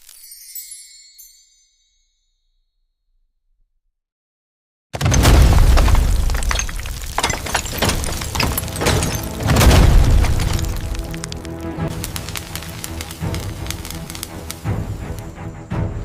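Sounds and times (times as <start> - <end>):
loud boom: 5.0 - 7.0, 7.6 - 11.2
deep rumble with crackling: 5.2 - 15.3.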